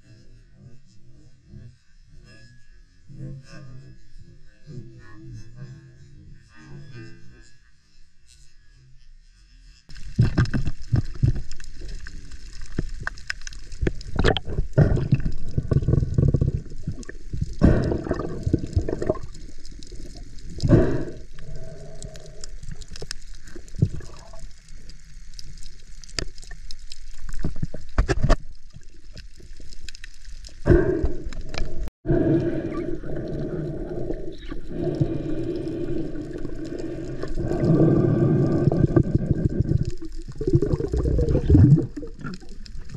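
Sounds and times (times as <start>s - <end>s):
muffled underwater bubbling: 10.0s - 42.9s.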